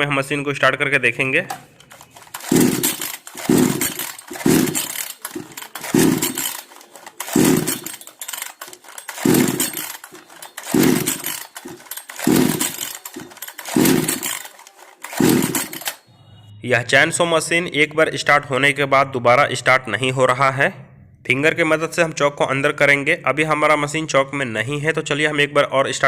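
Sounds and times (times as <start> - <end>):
chainsaw recoil starter pulls: 1.5 - 16.0
chainsaw engine turning over: 1.5 - 16.1.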